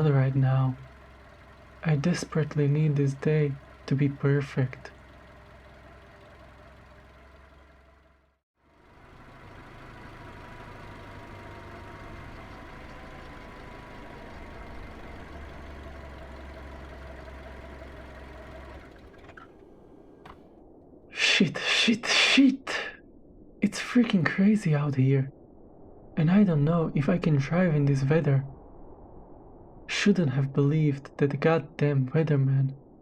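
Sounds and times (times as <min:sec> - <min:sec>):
car engine running: 0:00.0 - 0:20.6.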